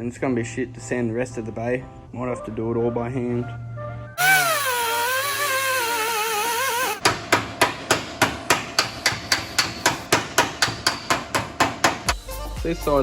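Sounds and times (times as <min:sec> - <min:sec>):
hammer blows on sheet steel: 0:06.4 - 0:12.2.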